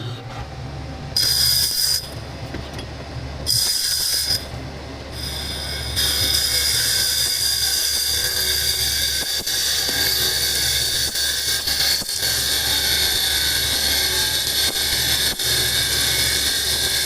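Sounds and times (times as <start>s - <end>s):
high-pitched cutting squeal: 5.1s - 17.0s.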